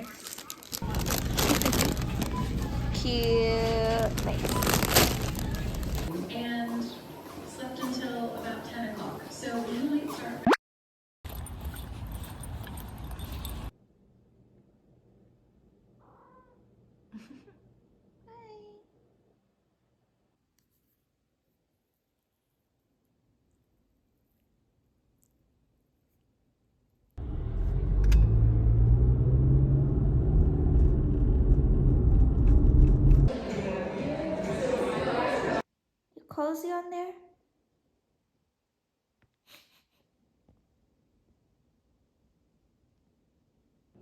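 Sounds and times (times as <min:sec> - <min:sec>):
low rumble: 0:27.2 - 0:33.3.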